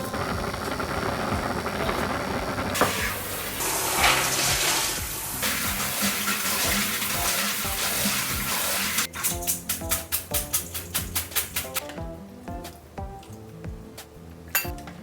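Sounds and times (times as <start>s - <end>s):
water running from tap: 0.0s - 9.5s
background music: 0.0s - 15.0s.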